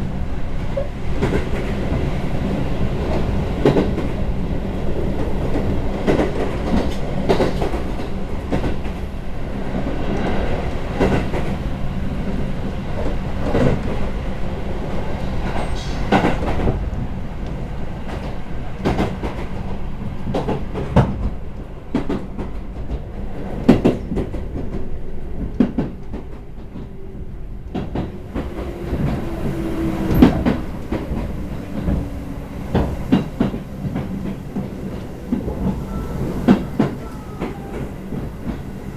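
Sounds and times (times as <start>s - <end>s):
train wheels rumbling on track: 0.0s - 38.9s
clacks over rail joints: 5.2s - 9.0s, 15.4s - 27.0s, 27.6s - 38.8s.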